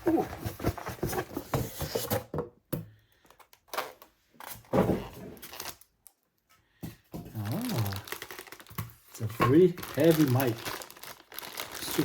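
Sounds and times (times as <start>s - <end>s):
cardboard packaging rustling and knocking: 0.0s - 2.6s, 4.6s - 5.7s, 8.6s - 12.0s.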